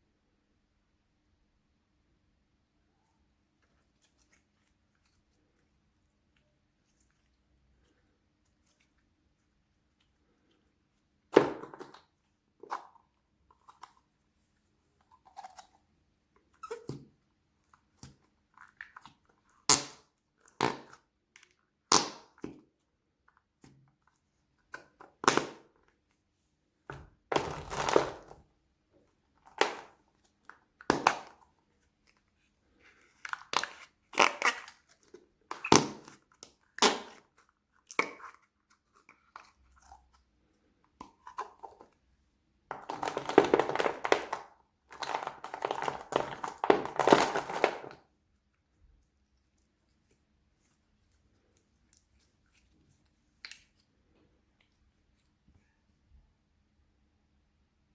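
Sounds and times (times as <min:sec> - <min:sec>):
toy crinkling and crunching: 0:42.7 - 0:48.0.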